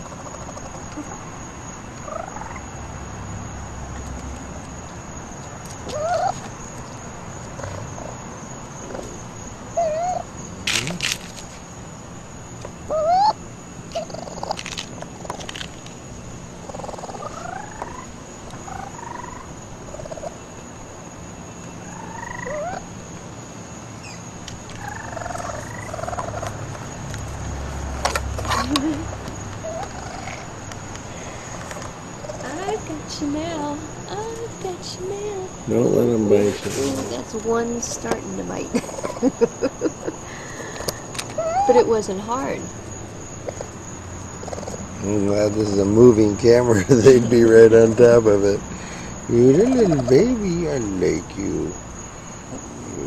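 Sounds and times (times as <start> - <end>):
baby raccoons chirping: 0.0 - 2.8, 4.8 - 11.6, 12.5 - 16.0, 16.6 - 23.2, 23.9 - 53.0.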